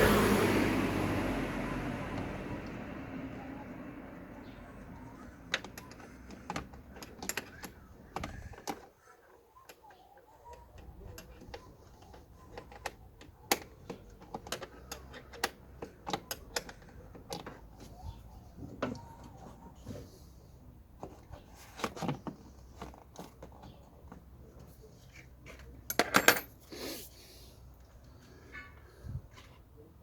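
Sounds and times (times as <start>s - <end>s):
plastic panels clicking and knocking: 5.4s - 8.9s, 10.5s - 17.9s.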